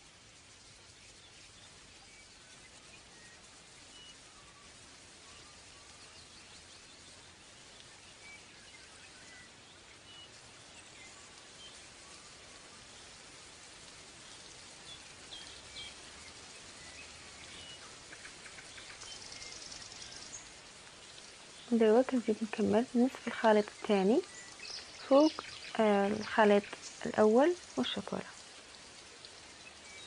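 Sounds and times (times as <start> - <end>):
background hiss: 0.0 - 30.0
light ticks: 7.8 - 8.0.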